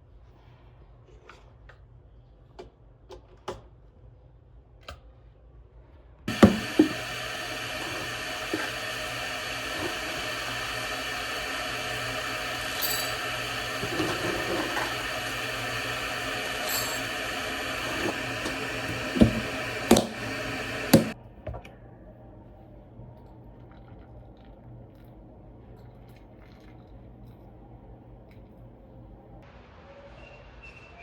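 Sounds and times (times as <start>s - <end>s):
appliance motor running: 6.3s - 21.2s.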